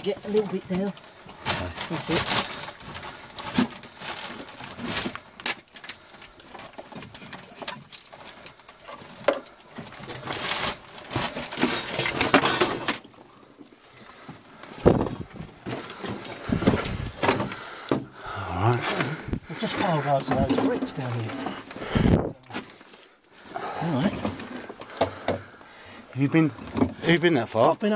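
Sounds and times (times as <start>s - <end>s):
bricks knocking and clattering: 14.8s - 22.8s.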